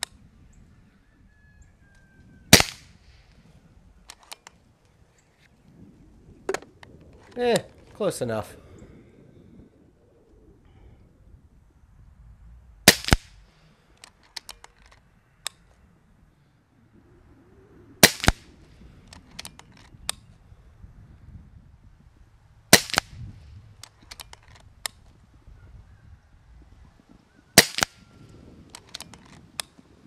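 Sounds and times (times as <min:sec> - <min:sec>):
air rifle shot crack: 0:02.5 - 0:03.3, 0:12.8 - 0:13.8, 0:18.0 - 0:18.7, 0:22.7 - 0:23.3, 0:27.6 - 0:28.1
rifle action clicks: 0:04.0 - 0:04.6, 0:12.9 - 0:13.4, 0:14.0 - 0:15.7, 0:19.1 - 0:20.3, 0:23.8 - 0:25.1, 0:27.6 - 0:28.0, 0:28.7 - 0:29.8.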